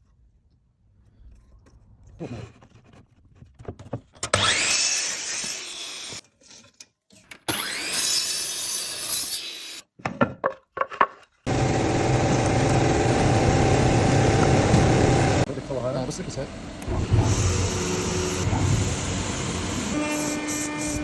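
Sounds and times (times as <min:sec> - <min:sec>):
cnc router cutting wood: 0:04.4 - 0:06.2, 0:11.5 - 0:21.0
steady low hum: 0:11.5 - 0:20.0.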